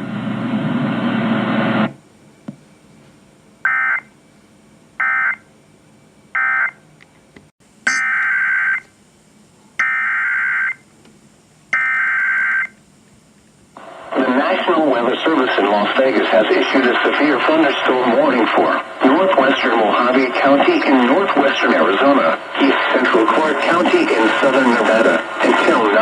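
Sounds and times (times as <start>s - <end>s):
warbling digital data bursts: 7.9s - 8.8s.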